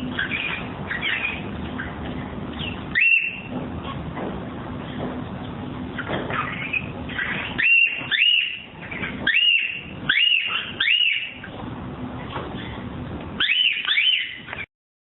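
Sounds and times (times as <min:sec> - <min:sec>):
parrots squawking: 0:00.0 - 0:04.0, 0:05.9 - 0:11.6, 0:13.4 - 0:14.7.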